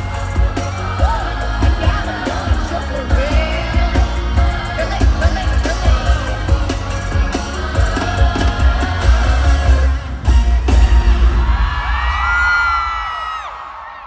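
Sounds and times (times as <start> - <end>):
woman singing: 0.0 - 10.0
heavy bass beat: 0.0 - 12.1.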